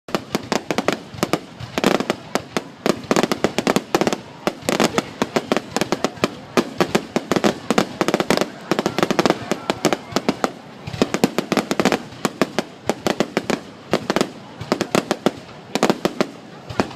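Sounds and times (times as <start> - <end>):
fireworks bangs and cracks: 0.1 - 16.9.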